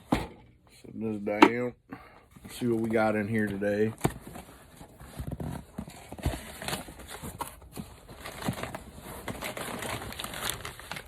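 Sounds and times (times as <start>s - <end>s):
cardboard scraping and rustling: 4.0s - 11.0s.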